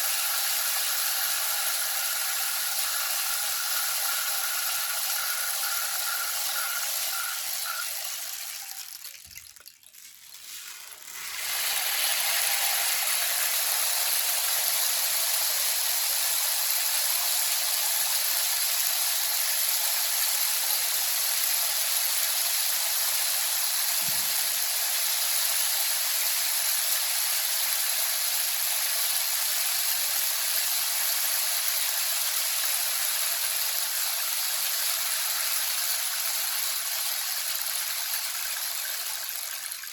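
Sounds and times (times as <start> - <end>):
rainstick pellets trickling: 0.0 - 14.4, 36.9 - 39.9.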